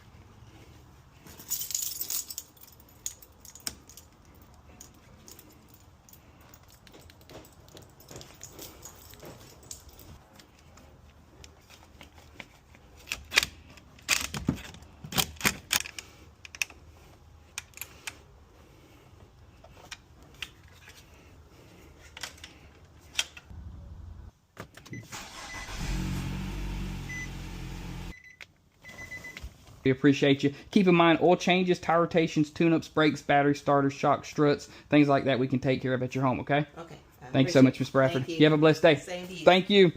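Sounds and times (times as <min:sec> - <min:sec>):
metal tools clinking and rattling: 0:01.2 - 0:10.7
car engine starting and running: 0:25.0 - 0:28.2.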